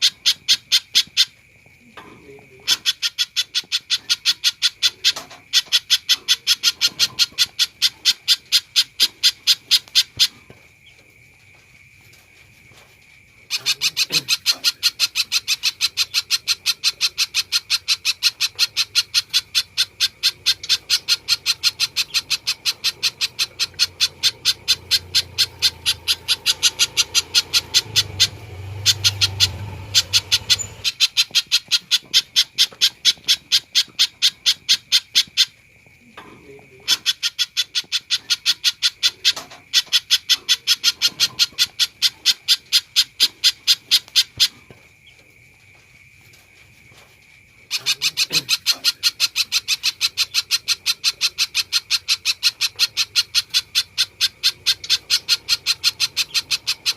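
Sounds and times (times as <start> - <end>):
bird calling sharp repeated notes: 13.5 - 35.6, 47.7 - 56.9.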